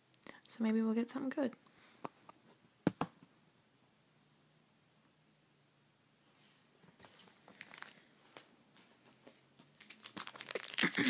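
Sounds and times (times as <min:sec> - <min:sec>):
foil pack crinkling: 0:07.5 - 0:08.0, 0:09.2 - 0:11.0.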